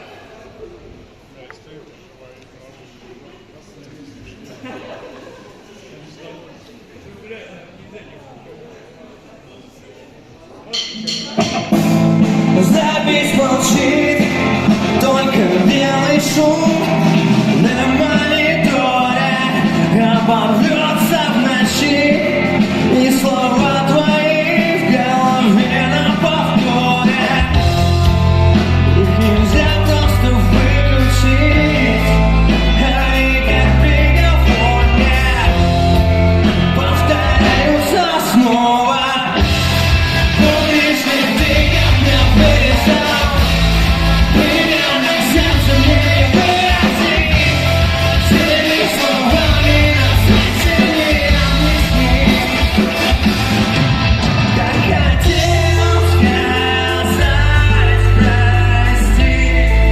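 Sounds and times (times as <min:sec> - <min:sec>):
rock band playing live: 0:10.8 - 0:59.9
person singing: 0:12.2 - 0:59.9.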